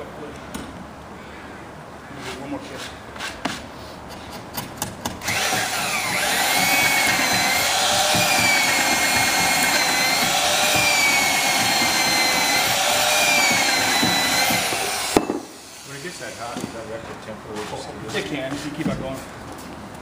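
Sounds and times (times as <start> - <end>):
power tool whining on wood: 5.2 - 16.9.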